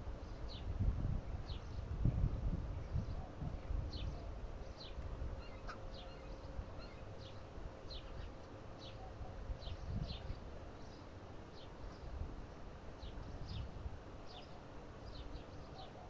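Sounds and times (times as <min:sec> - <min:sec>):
wind rumble on microphone: 0:00.0 - 0:08.4, 0:09.1 - 0:10.7, 0:11.8 - 0:14.3
small birds chirping: 0:00.2 - 0:00.7, 0:01.4 - 0:02.0, 0:02.6 - 0:16.0.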